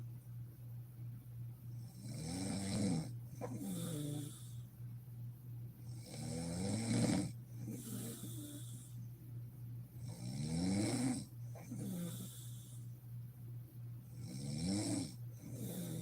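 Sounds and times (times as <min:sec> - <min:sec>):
steady low hum: 0:00.0 - 0:16.0
woman snoring: 0:02.0 - 0:04.7, 0:05.9 - 0:09.0, 0:10.0 - 0:12.8, 0:14.2 - 0:16.0.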